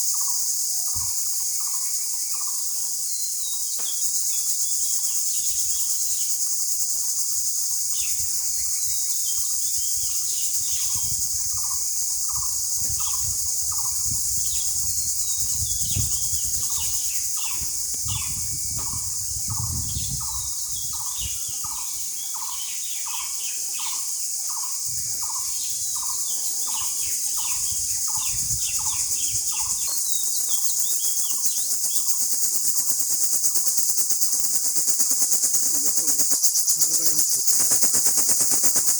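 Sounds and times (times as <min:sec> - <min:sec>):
insects chirring: 0:00.0 - 0:38.9
birds chirping: 0:35.0 - 0:38.4.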